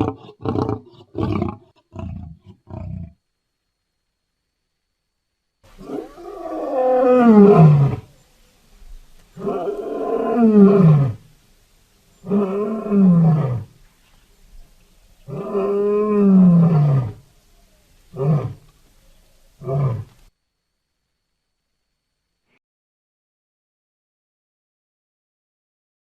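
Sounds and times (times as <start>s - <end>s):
lion grunts: 0.0s - 3.2s
lion roaring: 0.0s - 3.2s, 5.7s - 8.1s, 9.3s - 11.2s, 12.2s - 13.8s, 15.2s - 17.2s, 18.1s - 18.7s, 19.6s - 20.2s.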